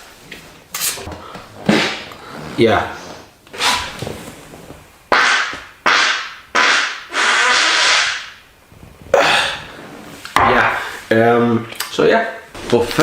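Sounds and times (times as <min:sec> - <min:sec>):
farts: 0:01.0 - 0:10.9.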